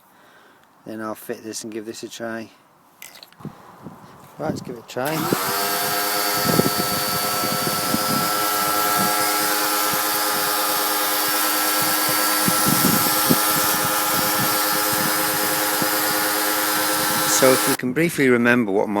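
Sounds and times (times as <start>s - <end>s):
high-pressure water jet hissing: 5.0s - 17.8s
pressure washer motor whining: 5.0s - 17.8s.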